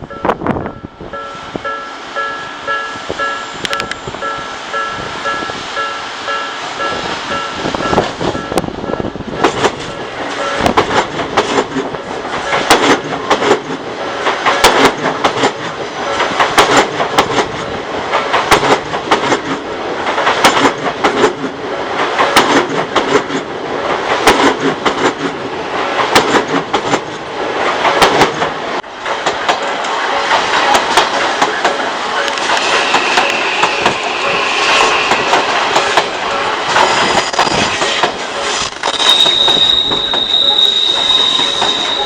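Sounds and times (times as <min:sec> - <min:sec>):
crossing warning bell ringing: 0:00.0 - 0:10.8, 0:12.4 - 0:12.8, 0:15.9 - 0:16.4, 0:31.4 - 0:42.0
train wheels rushing on rail: 0:00.1 - 0:42.0
wheels clacking over rail joints: 0:01.2 - 0:42.0.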